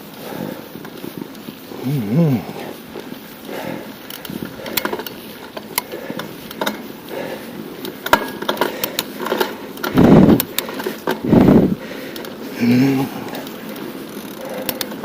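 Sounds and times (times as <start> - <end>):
bicycle rattling clicks: 0.0 - 15.0.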